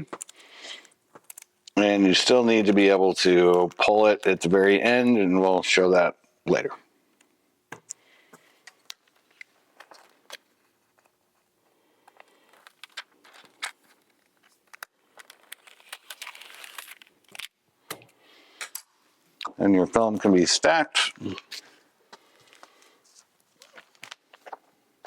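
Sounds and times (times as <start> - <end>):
plastic film crinkling: 0.0 - 1.6, 12.0 - 17.6, 22.4 - 24.8.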